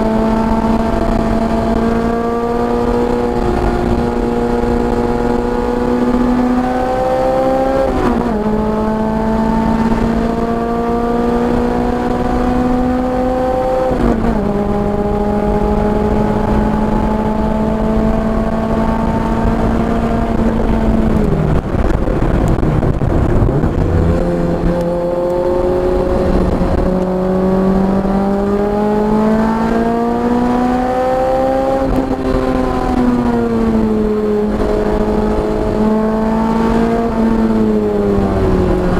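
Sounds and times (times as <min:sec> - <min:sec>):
car engine accelerating: 0:00.0 - 0:38.9.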